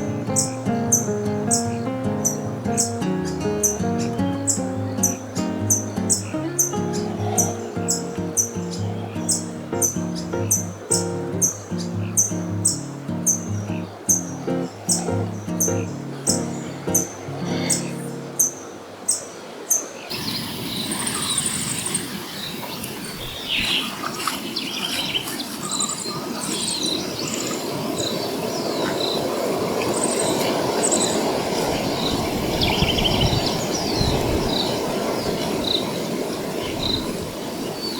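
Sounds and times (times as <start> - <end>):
birds chirping and whistling: 0.0 - 18.6, 29.9 - 37.9.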